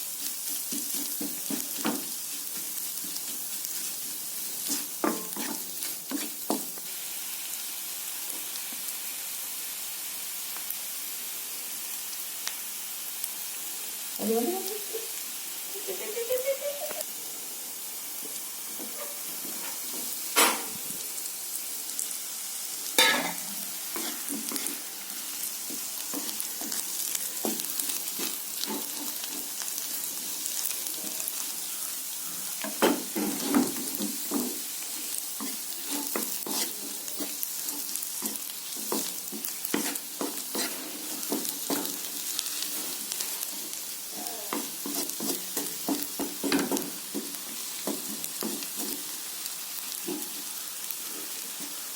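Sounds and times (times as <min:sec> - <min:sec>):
food sizzling in hot oil: 0:00.0 - 0:51.9
spatula scraping a pan: 0:00.1 - 0:06.7, 0:23.0 - 0:30.2, 0:32.4 - 0:43.6, 0:44.5 - 0:49.2.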